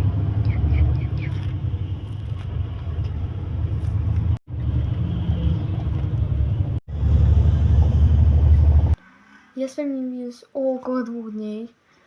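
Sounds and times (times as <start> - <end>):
loud low rumble: 0.0 - 9.0.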